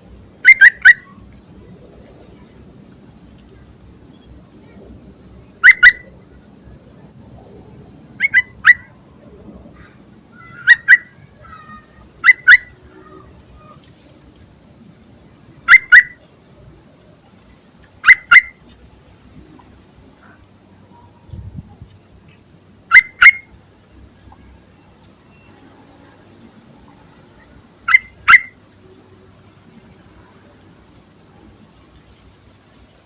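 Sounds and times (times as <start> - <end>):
bird calling in sharp notes: 0.4 - 1.3, 5.5 - 6.8, 8.2 - 9.0, 9.8 - 13.8, 15.6 - 16.2, 18.0 - 18.7, 22.1 - 23.6, 27.8 - 28.6.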